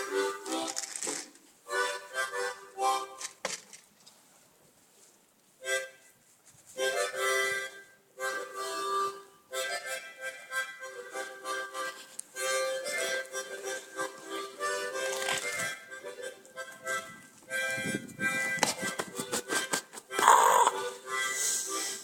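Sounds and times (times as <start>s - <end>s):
harmonica playing chords: 0.0s - 0.7s, 1.7s - 3.2s, 6.8s - 22.0s.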